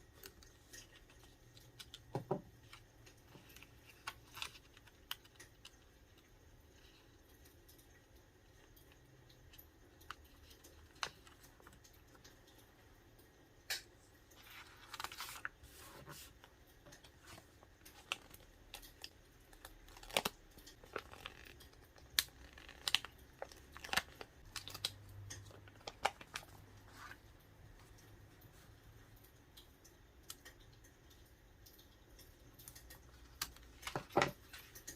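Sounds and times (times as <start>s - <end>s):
sticker sheets rustling: 14.4s - 24.9s.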